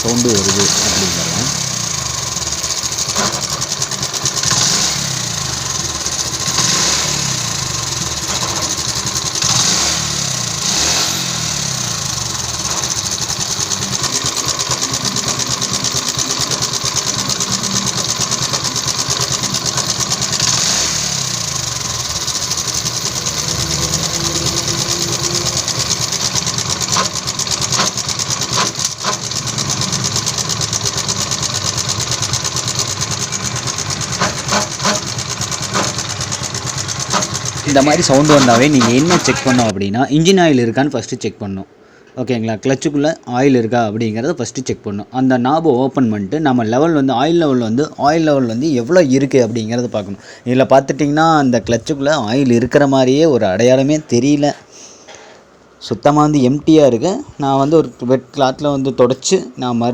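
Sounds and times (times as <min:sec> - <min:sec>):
clutch rubbing noise: 0:00.0 - 0:39.8
motorcycle engine revving: 0:00.0 - 0:39.8.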